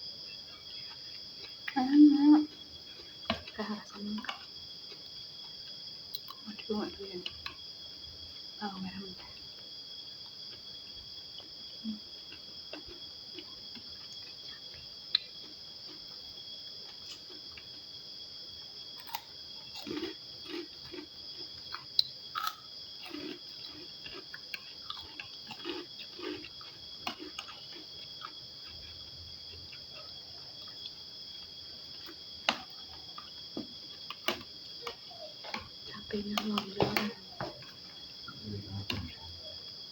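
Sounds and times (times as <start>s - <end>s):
crickets chirring: 0.0s - 39.9s
person chewing food: 4.2s - 6.4s, 10.2s - 17.8s, 19.0s - 39.7s.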